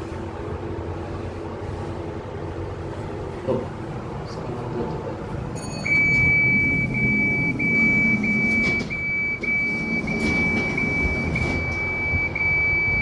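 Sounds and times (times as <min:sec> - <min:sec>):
lift car low hum: 0:00.0 - 0:13.0
lift buzzer high steady tone: 0:05.6 - 0:13.0.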